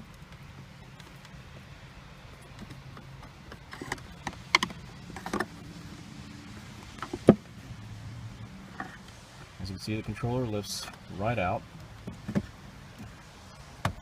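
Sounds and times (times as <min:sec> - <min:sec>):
low steady hum: 0:00.0 - 0:14.0.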